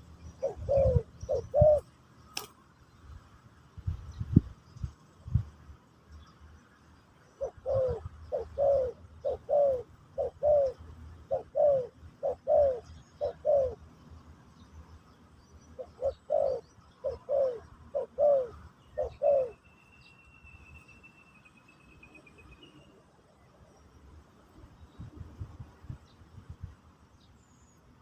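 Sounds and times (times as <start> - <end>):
dove cooing: 0.0 - 1.9, 7.3 - 13.9, 15.8 - 19.6.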